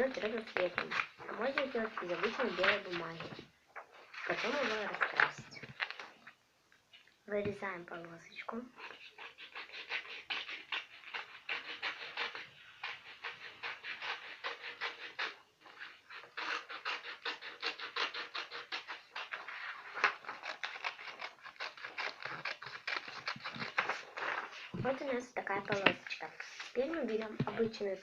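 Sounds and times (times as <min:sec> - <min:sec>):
scissors snipping paper: 0:00.0 - 0:03.4, 0:04.2 - 0:06.1, 0:16.2 - 0:24.2.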